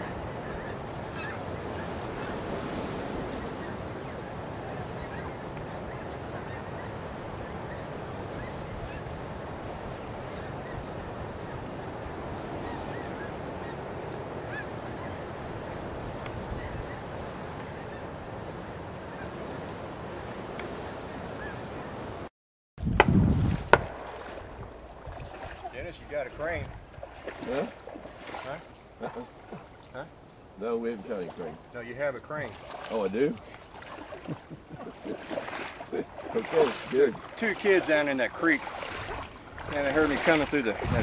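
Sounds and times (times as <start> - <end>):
geese honking: 0.0 - 19.4.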